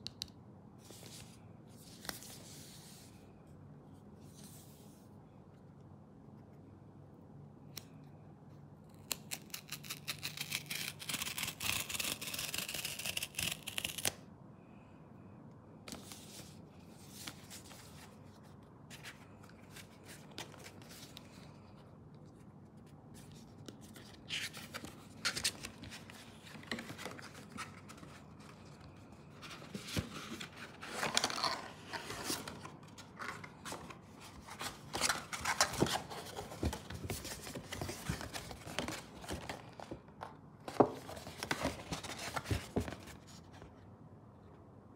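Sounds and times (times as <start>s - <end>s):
packaging rustling and scraping: 23.2s - 43.5s.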